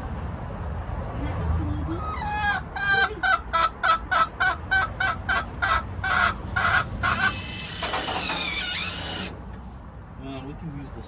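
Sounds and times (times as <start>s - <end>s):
hen cackling: 2.0s - 9.3s.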